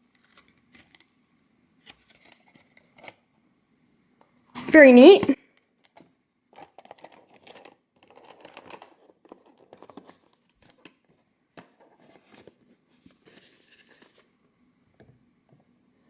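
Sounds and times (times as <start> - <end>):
toy packaging clicks and rustles: 0.0 - 1.1, 1.8 - 3.2, 5.6 - 12.7.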